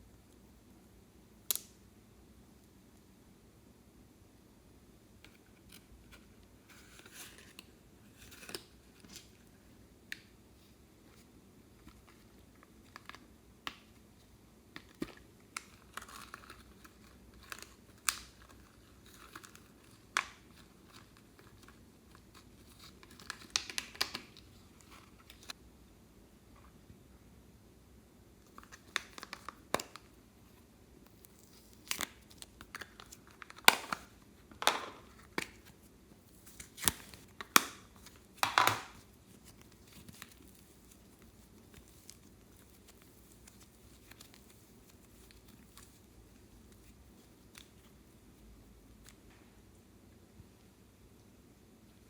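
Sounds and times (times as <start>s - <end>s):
slime crackling and popping: 31.1s - 34.1s, 36.4s - 47.9s.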